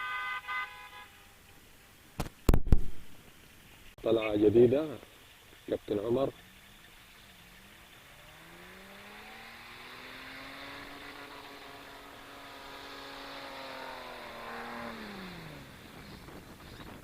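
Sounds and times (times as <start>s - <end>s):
engine revving: 7.8s - 17.0s.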